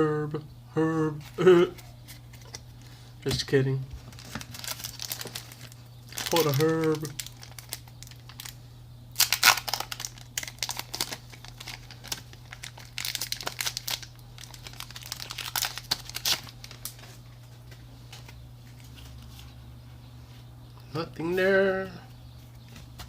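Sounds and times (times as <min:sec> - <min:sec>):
steady low hum: 0:00.0 - 0:23.0
foil wrapper crinkling and tearing: 0:04.0 - 0:17.2.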